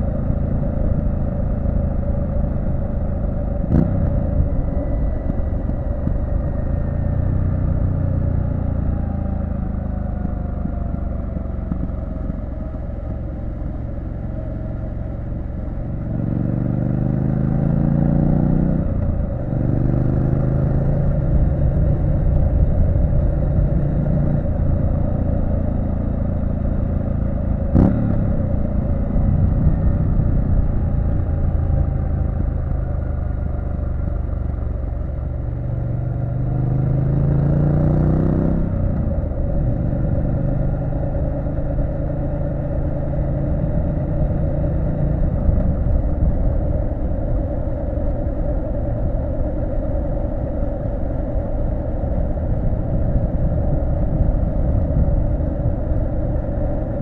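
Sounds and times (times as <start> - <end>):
motorcycle engine running: 0.0 - 57.0
wind rush: 18.8 - 57.0.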